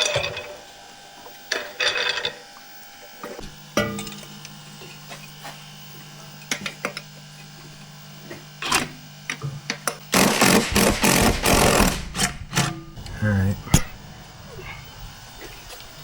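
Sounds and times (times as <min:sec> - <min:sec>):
rapid mechanical rattling: 0:10.1 - 0:12.8
steady low hum: 0:10.1 - 0:16.0.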